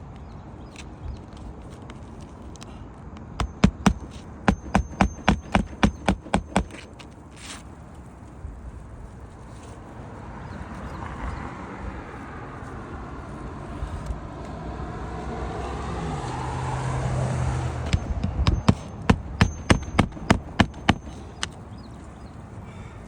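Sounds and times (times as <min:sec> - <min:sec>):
sharp knocks: 0:03.4 - 0:07.0, 0:17.8 - 0:21.6.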